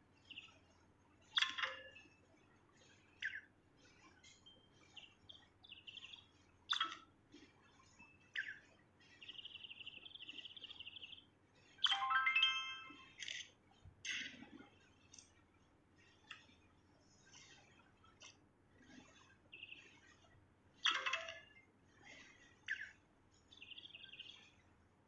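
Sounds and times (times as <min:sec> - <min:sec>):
songbird singing: 0:02.9 - 0:07.0, 0:08.0 - 0:13.4, 0:19.5 - 0:20.1, 0:22.6 - 0:24.6.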